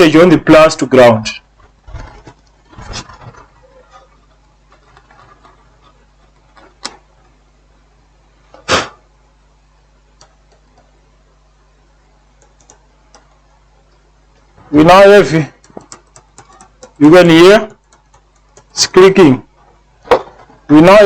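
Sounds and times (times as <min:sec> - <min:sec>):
faint taps and ticks: 0:15.6 - 0:17.0, 0:17.7 - 0:18.8.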